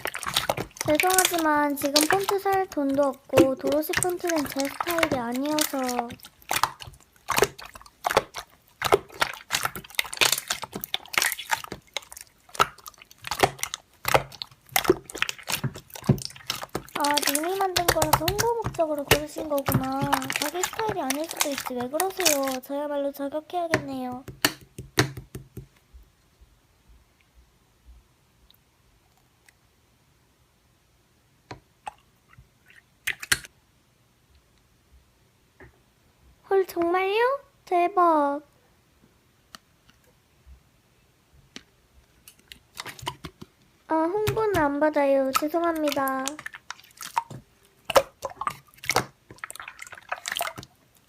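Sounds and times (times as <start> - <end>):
slime squishing with wet pops: 0.0 - 25.8, 31.6 - 33.5, 42.2 - 51.0
slime air pockets popping: 12.5 - 22.6, 23.7 - 25.7.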